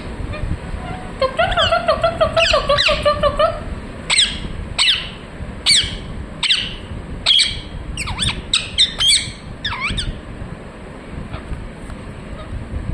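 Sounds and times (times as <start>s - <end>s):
parrot squawking: 0.3s - 10.2s.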